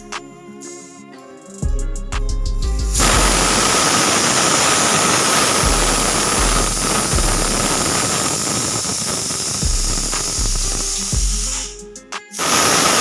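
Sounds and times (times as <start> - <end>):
pressure cooker hissing steam: 3.0 - 11.8, 12.4 - 13.0.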